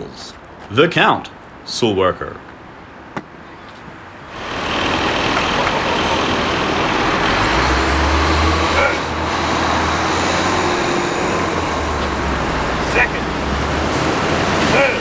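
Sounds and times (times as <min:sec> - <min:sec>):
deep engine rumble: 0:04.3 - 0:15.0
vehicles driving past: 0:04.3 - 0:15.0.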